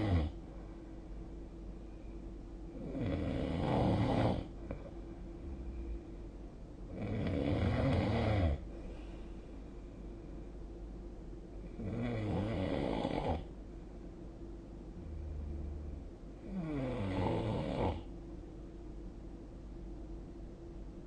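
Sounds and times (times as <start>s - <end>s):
steady low hum: 0.0s - 21.0s
person snoring: 2.8s - 4.5s, 5.4s - 6.0s, 6.9s - 8.6s, 15.0s - 18.0s.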